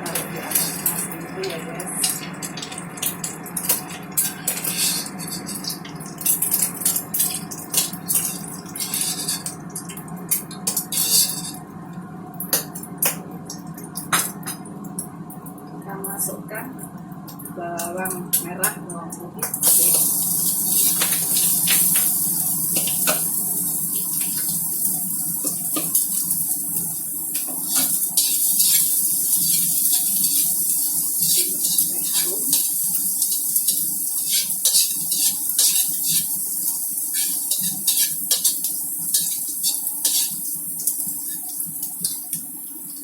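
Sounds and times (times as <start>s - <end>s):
shallots sizzling in hot oil: 0.0s - 11.7s, 19.4s - 43.0s.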